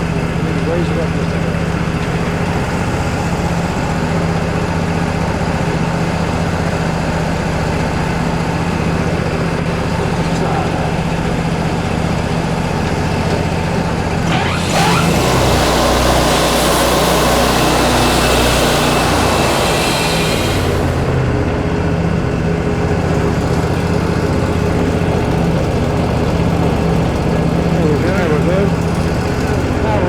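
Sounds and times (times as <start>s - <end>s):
sawmill engine running: 0.0s - 30.0s
band saw blade cutting log: 10.0s - 21.3s.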